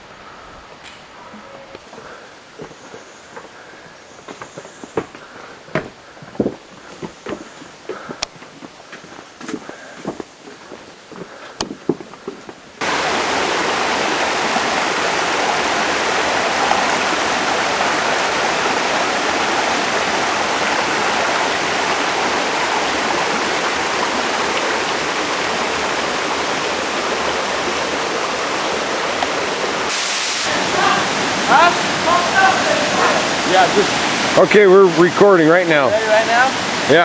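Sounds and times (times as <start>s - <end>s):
waterfall rushing: 12.8s - 37.0s.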